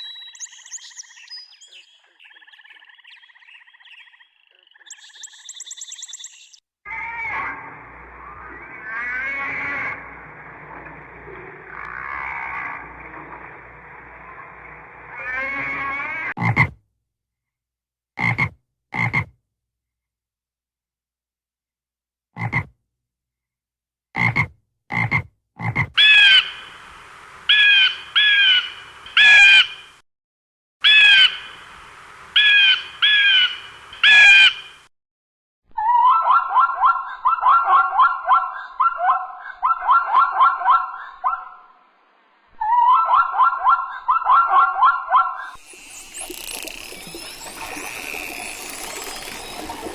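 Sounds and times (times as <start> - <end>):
frogs croaking: 0.1 - 6.6, 8.2 - 15.6, 45.4 - 49.9.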